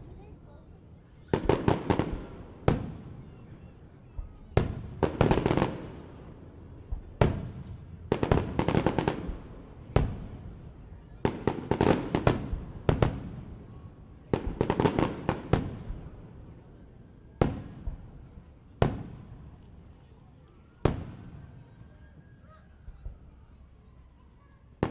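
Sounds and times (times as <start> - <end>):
firework booms: 4.1 - 13.7
firework crackling volleys: 4.3 - 16.4.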